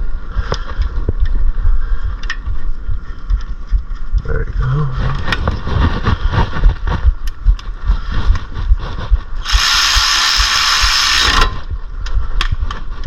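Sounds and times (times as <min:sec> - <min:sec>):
loud steady hiss: 0:09.4 - 0:11.5
ratchet clicking: 0:09.4 - 0:11.6.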